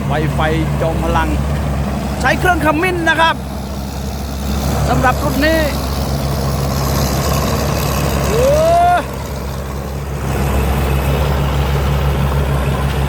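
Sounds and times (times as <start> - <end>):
diesel engine running: 0.0 - 13.0.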